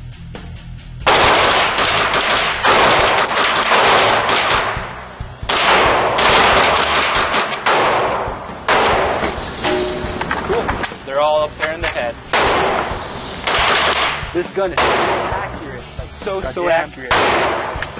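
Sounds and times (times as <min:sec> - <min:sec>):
rifle fired rapidly: 0:01.0 - 0:09.2, 0:12.3 - 0:12.9, 0:13.5 - 0:14.2, 0:14.8 - 0:15.3, 0:17.1 - 0:17.9.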